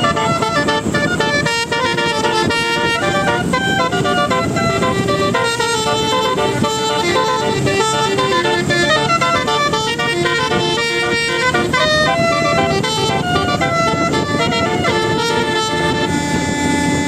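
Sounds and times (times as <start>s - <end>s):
bus horn playing tune: 0.0s - 17.0s.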